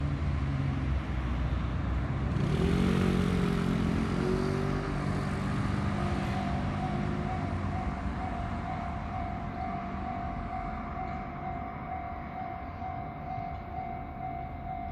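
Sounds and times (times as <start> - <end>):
traffic noise: 0.0 - 14.9
vehicle engine speeding up: 2.2 - 10.6
level crossing warning bell: 6.0 - 14.9.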